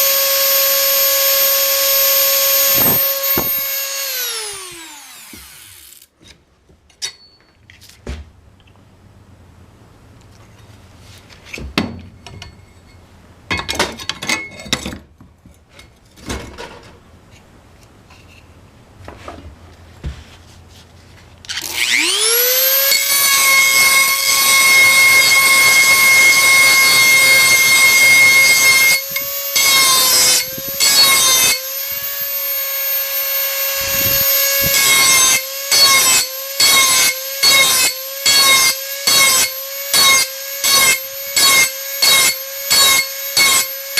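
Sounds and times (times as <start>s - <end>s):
grinding bit rasping on steel: 0.0s - 6.1s, 21.8s - 43.9s
rotary tool whining: 0.0s - 6.1s, 21.5s - 43.9s.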